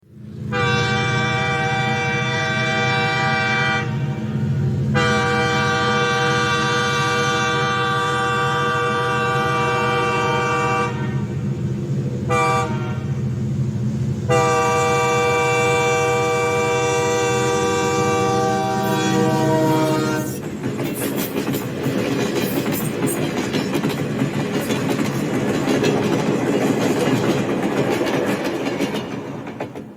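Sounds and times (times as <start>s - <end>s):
low train rumble: 0.0s - 29.9s
locomotive air horn blasts: 0.5s - 11.4s, 12.3s - 13.2s, 14.3s - 20.4s.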